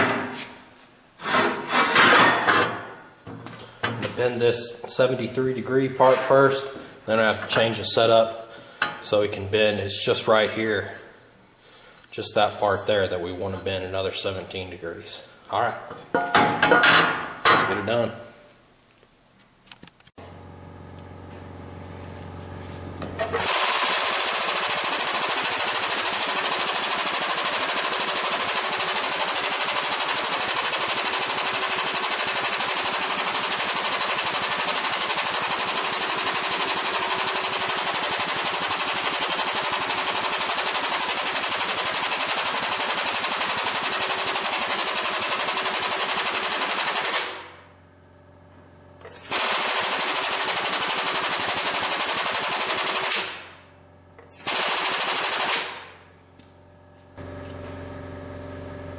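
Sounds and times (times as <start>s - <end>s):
low machine hum: 56.0s - 58.9s.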